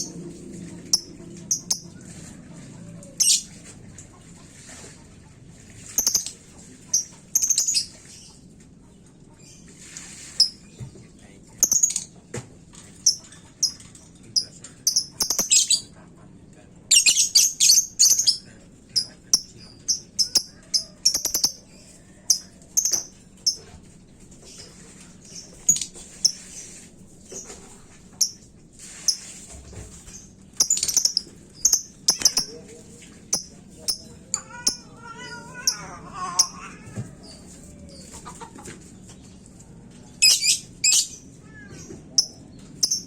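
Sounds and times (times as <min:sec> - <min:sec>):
lovebird chirping: 0:16.9 - 0:18.4, 0:30.6 - 0:32.6, 0:40.2 - 0:41.2.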